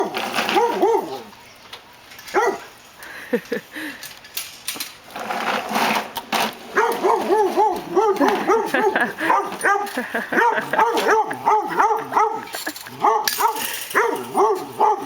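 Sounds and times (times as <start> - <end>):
dog barking in high yaps: 0.0 - 1.2, 2.3 - 2.7, 6.7 - 15.0.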